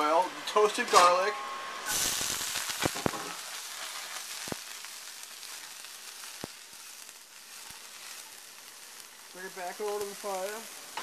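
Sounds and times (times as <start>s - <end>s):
oil sizzling in a pan: 0.0s - 11.0s.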